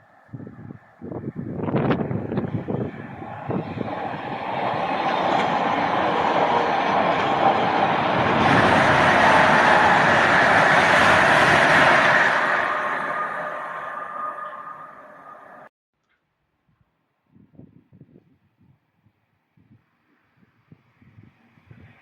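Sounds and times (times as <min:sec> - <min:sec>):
train wheels on rails: 0:01.0 - 0:15.7.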